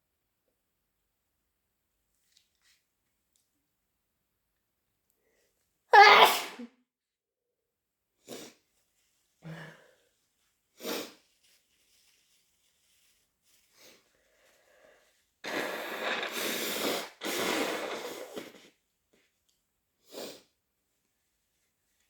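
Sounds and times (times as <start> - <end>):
person sneezing: 5.9 - 6.7
loud noisy blasts of breath: 15.5 - 18.3.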